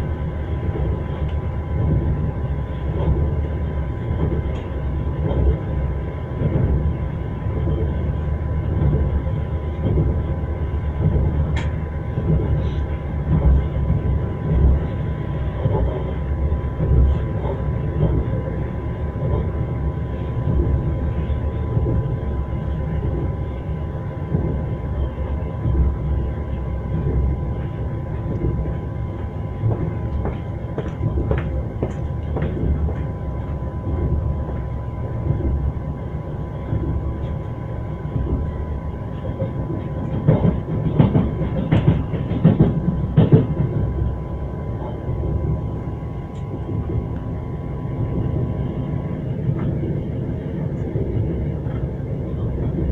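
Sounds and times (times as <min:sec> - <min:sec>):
low rumble of moving train: 0:00.0 - 0:52.9
train wheels knocking on rail joints: 0:28.1 - 0:34.6, 0:39.4 - 0:44.1.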